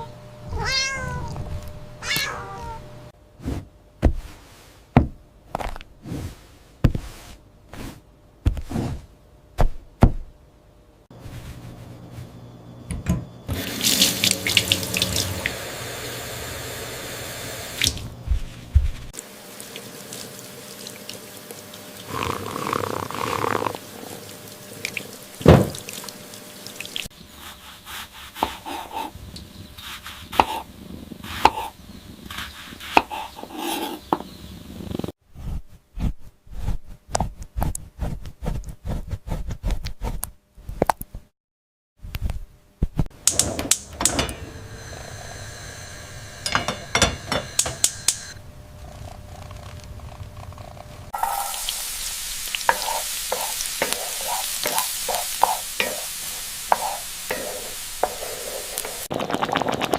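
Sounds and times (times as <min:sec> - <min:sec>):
kitchen handling noises: 0:25.4 - 0:26.1, 0:43.1 - 0:44.7, 0:46.4 - 0:48.3.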